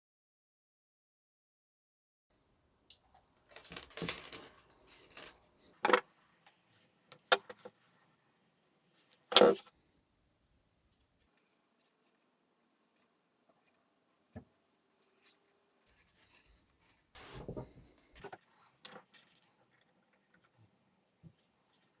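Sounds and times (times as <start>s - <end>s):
rustling scrape: 15.0s - 17.9s.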